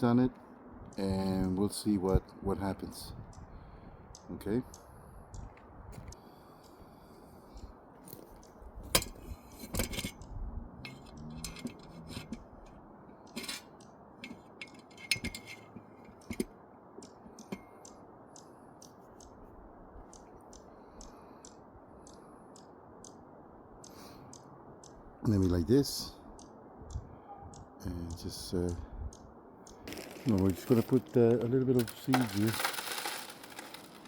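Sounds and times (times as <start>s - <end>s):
small hard parts clicking: 8.9s - 18.0s, 29.6s - 34.0s.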